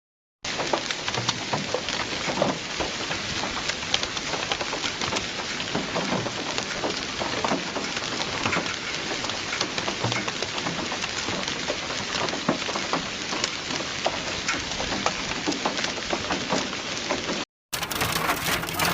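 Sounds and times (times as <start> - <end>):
hailstones striking: 14.4 - 18.9.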